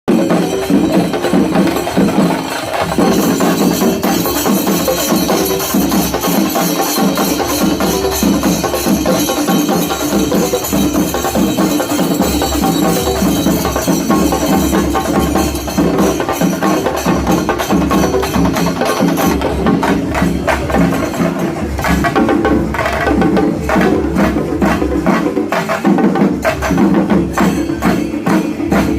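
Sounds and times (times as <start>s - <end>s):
hand cymbals jingling: 0.1s - 22.6s
drums played with sticks: 0.1s - 28.9s.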